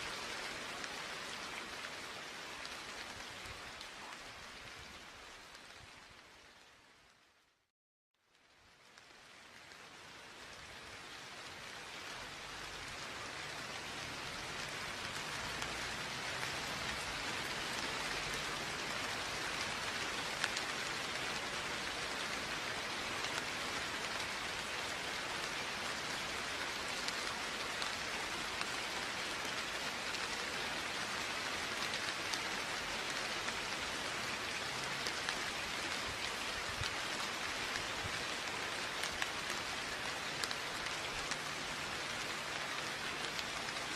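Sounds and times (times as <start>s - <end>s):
steady rain falling: 0.0s - 43.9s
raindrop ticks: 12.9s - 22.4s, 23.2s - 43.9s.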